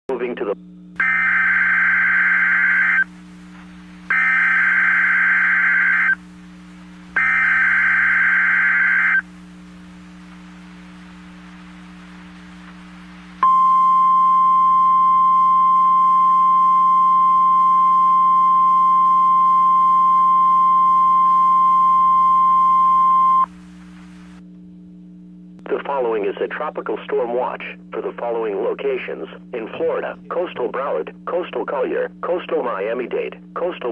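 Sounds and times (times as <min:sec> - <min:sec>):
low hum: 0:00.1 - 0:33.9
buzzing data bursts: 0:00.7 - 0:24.4.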